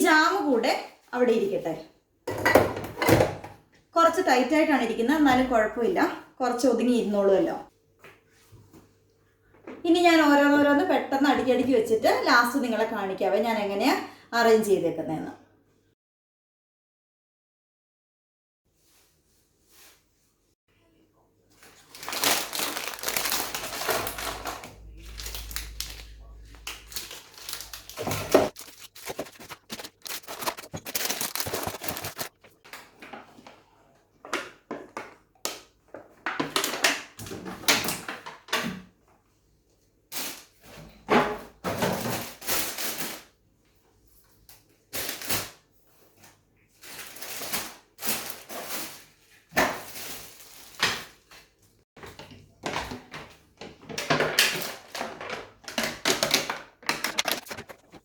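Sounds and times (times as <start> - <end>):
rustling of packaging: 21.5 - 33.6, 46.7 - 58.0.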